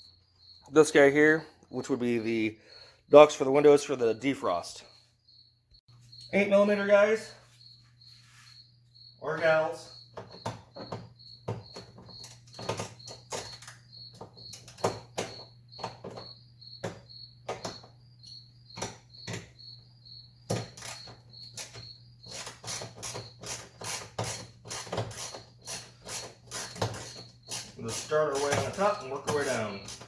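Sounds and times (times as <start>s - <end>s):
crickets chirping: 0.0s - 30.0s
ratchet wrench clicking: 20.8s - 30.0s.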